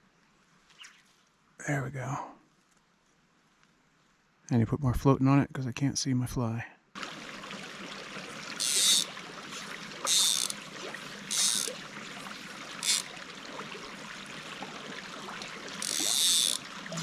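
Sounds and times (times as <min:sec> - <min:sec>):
creek water running: 0:07.0 - 0:17.0.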